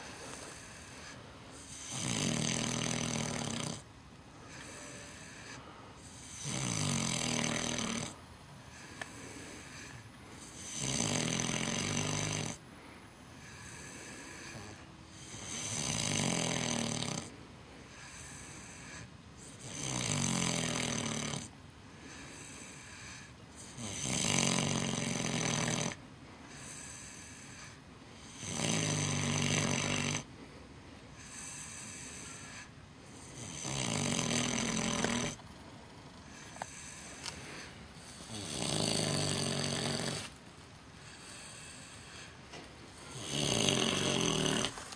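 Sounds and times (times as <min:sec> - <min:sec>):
pig breathing softly: 0:00.0 - 0:02.0, 0:04.3 - 0:06.4, 0:07.4 - 0:10.8, 0:12.2 - 0:15.8, 0:26.3 - 0:27.9, 0:36.2 - 0:44.9
pig snoring loudly: 0:00.0 - 0:03.9, 0:04.5 - 0:12.6, 0:13.4 - 0:17.3, 0:17.9 - 0:21.5, 0:22.1 - 0:30.3, 0:31.2 - 0:35.4, 0:36.2 - 0:40.4, 0:43.1 - 0:44.9.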